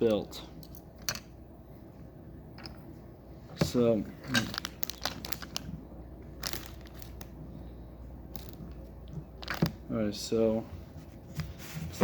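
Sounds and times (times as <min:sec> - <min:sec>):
plastic pieces clicking and rattling: 0:04.3 - 0:05.7.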